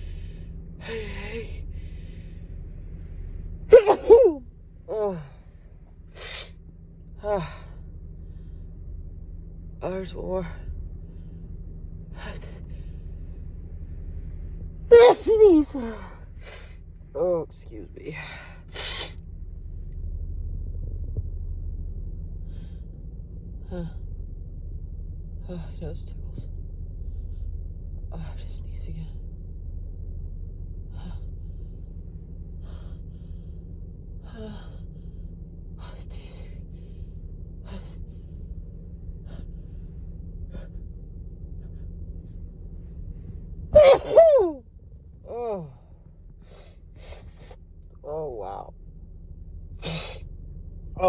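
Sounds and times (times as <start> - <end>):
steady low hum: 0.0 - 51.0
woman sniffing: 49.8 - 50.2.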